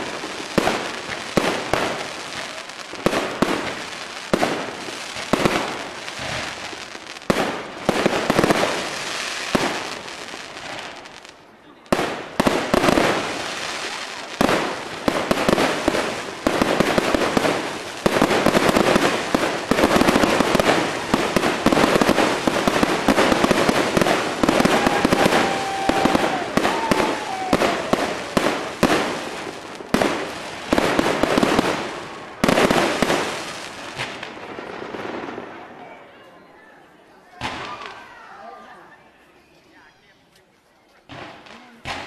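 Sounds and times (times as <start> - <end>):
fireworks crackling and banging: 0.0 - 36.2, 37.3 - 38.6, 39.4 - 42.0
firework whistle: 24.0 - 28.6.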